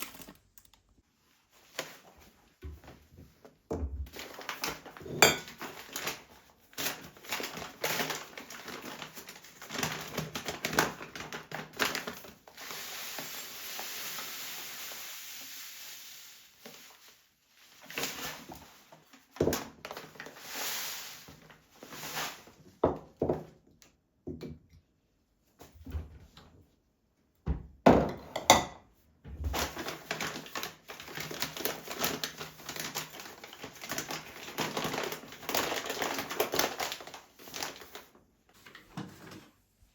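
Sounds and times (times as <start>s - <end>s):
packaging crinkling: 0.0s - 1.0s, 4.2s - 12.6s, 29.6s - 38.2s.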